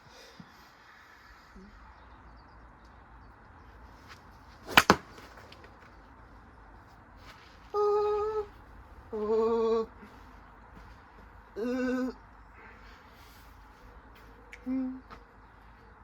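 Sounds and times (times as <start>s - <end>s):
sharp cracks: 4.6s - 6.0s.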